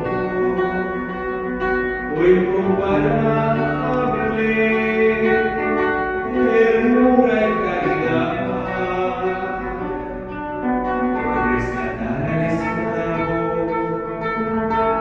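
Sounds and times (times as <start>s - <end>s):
guitar accompaniment: 0.0s - 15.0s
person singing slow melody: 0.0s - 15.0s.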